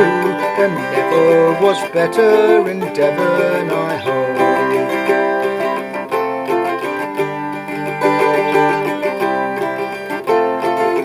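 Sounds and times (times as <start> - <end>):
plucked mandola strings: 0.0 - 11.0.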